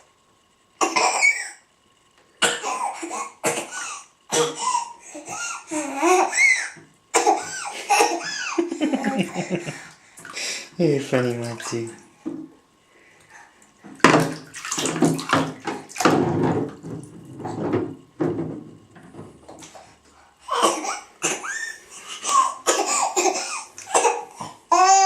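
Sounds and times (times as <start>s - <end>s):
bath water splashing: 7.3s - 12.2s, 13.6s - 18.8s, 19.4s - 20.0s.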